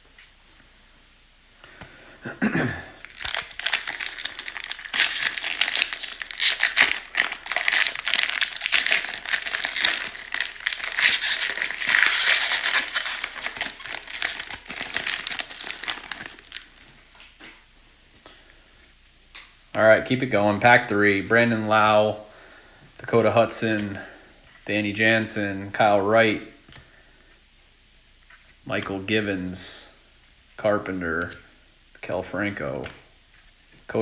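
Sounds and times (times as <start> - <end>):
foil wrapper crinkling: 3.0 - 17.3.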